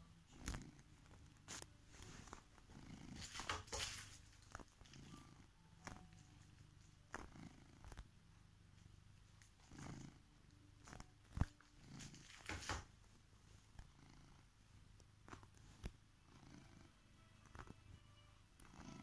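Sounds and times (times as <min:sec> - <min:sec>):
cat purring: 0:00.0 - 0:19.0
soft rustles and taps: 0:00.5 - 0:05.0, 0:10.8 - 0:13.9.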